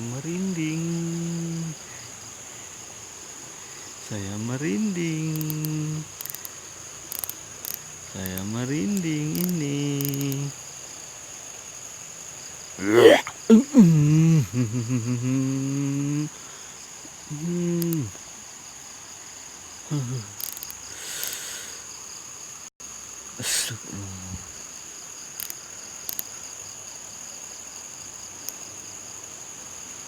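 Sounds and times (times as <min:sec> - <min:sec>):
crickets chirring: 0:00.0 - 0:30.0
low voice-like hums: 0:12.8 - 0:16.3, 0:17.3 - 0:18.2.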